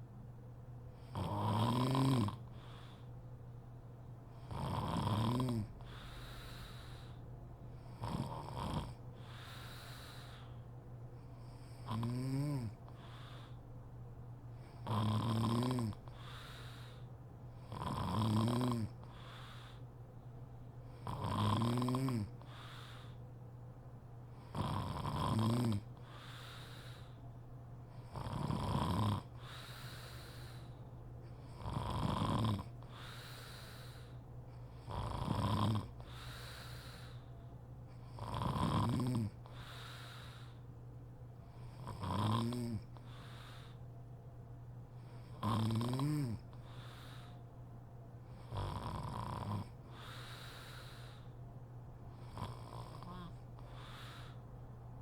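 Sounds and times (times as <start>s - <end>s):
quiet breathing: 0.0s - 55.0s
woman snoring: 1.1s - 2.5s, 4.4s - 5.8s, 7.9s - 10.4s, 11.8s - 12.8s, 14.8s - 16.0s, 17.6s - 19.0s, 21.0s - 22.4s, 24.5s - 25.9s, 28.1s - 30.7s, 31.5s - 34.1s, 34.9s - 37.2s, 38.1s - 40.6s, 41.7s - 42.9s, 45.3s - 46.4s, 48.4s - 50.9s, 52.2s - 54.3s.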